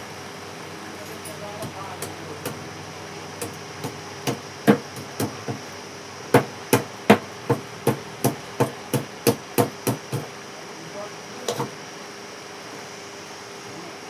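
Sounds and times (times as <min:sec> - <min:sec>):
hammer blows on metal fan: 0:01.0 - 0:02.8, 0:03.4 - 0:10.3.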